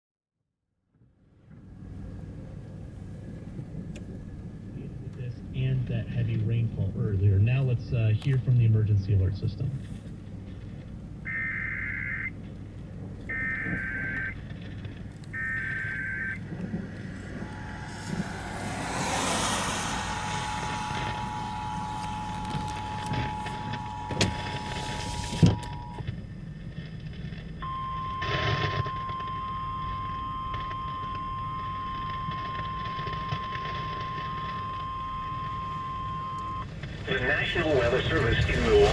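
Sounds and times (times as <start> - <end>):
two-tone attention signal: 13.3 - 14.4, 15.4 - 26.0, 27.6 - 36.6
warbling data bursts: 13.3 - 14.4, 15.3 - 26.0.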